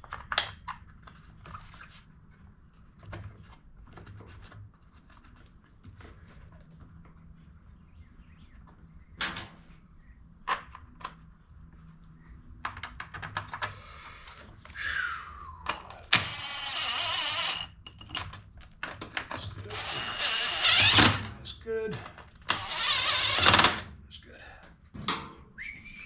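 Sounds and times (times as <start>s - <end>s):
tools clicking and knocking: 17.6s - 19.5s.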